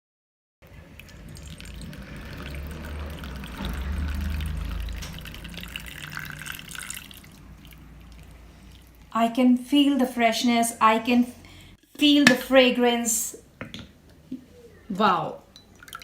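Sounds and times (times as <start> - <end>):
tea pouring into a cup: 0.7 - 9.0, 15.6 - 16.0.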